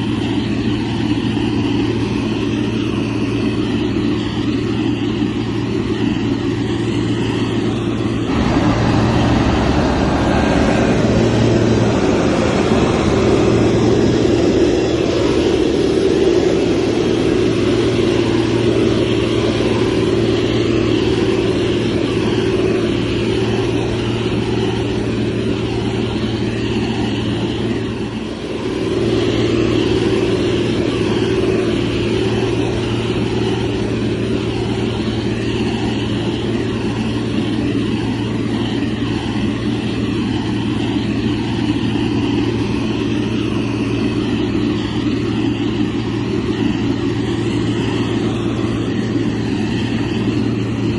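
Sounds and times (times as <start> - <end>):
heavy diesel engine running: 0.0 - 50.9.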